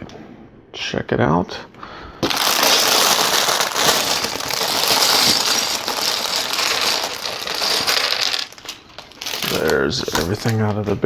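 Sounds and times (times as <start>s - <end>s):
plastic pieces rattling: 2.2s - 10.8s
plastic bag crinkling: 2.2s - 11.0s.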